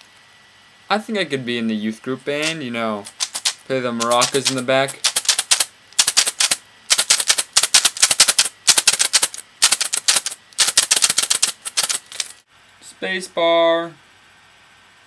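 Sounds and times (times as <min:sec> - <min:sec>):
plastic keycaps clattering: 0:02.4 - 0:12.4.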